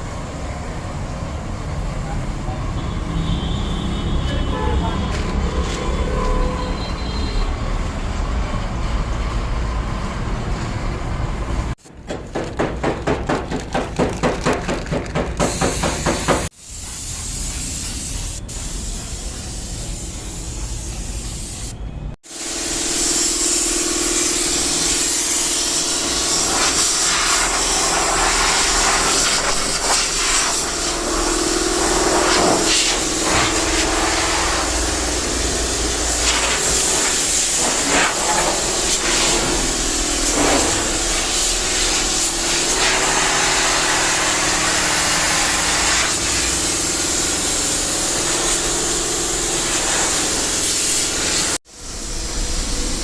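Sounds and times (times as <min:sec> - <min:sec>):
loud hissing noise: 0:15.4 - 0:53.0.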